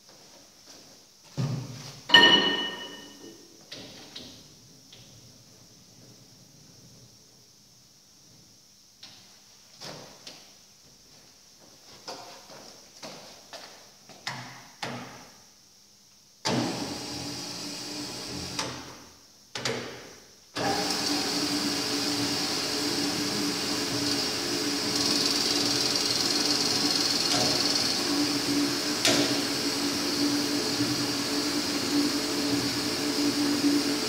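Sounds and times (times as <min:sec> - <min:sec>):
bandsaw motor running: 0:20.7 - 0:32.2.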